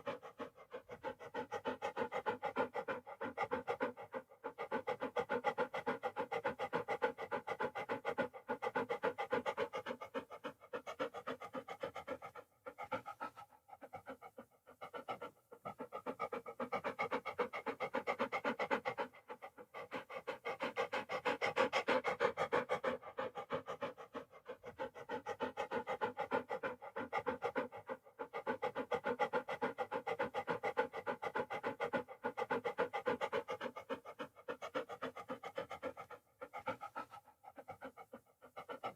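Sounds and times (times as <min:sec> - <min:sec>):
dog panting: 0:00.0 - 0:38.9.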